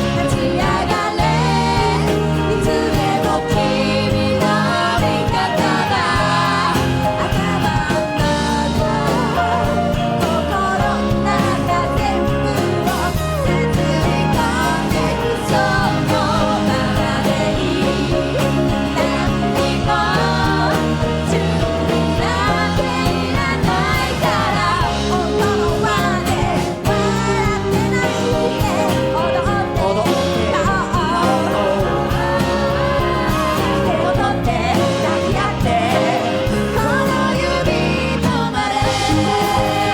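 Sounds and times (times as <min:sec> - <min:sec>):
bending lead melody: 0:00.0 - 0:39.9
live band playing pop song: 0:00.0 - 0:39.9.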